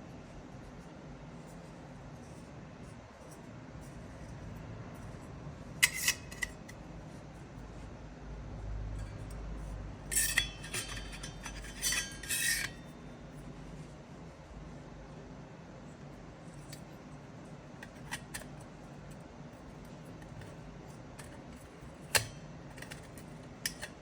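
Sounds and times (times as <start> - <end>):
metal parts clinking and scraping: 10.1 - 13.0.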